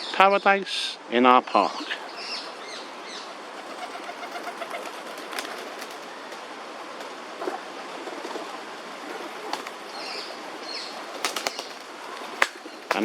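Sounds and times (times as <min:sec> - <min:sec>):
outdoor background hiss: 0:00.0 - 0:13.0
pigeons cooing: 0:01.8 - 0:06.3.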